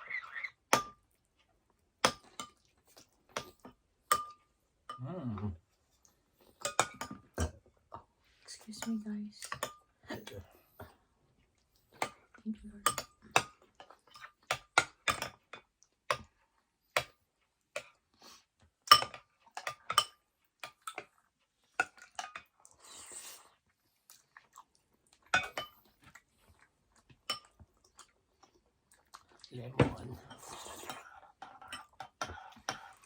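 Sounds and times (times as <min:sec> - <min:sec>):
chewing: 0:20.4 - 0:29.6.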